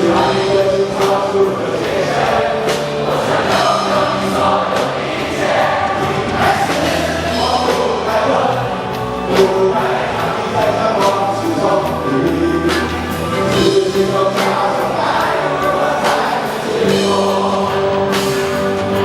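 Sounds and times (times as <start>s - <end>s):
live band with group singing: 0.0s - 19.0s.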